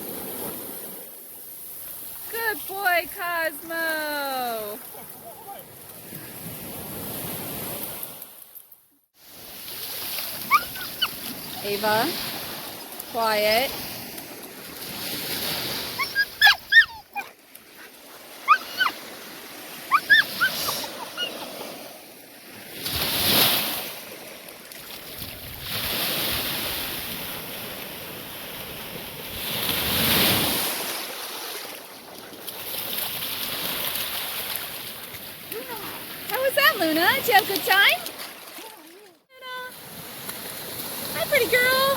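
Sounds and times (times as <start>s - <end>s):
ocean surf washing: 9.2s - 41.9s
dog whining in high yelps: 10.4s - 11.2s, 15.9s - 17.4s, 18.4s - 19.0s, 19.9s - 21.6s.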